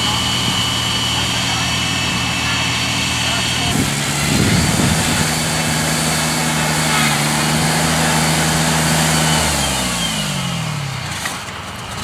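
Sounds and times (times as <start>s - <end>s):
combine harvester engine running: 0.0s - 12.0s.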